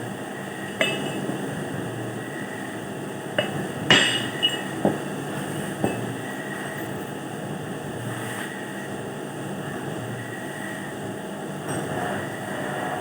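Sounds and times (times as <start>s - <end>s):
steady background hum: 0.0s - 13.0s
metal parts knocking and clinking: 0.7s - 1.5s, 3.4s - 5.1s, 5.8s - 6.2s.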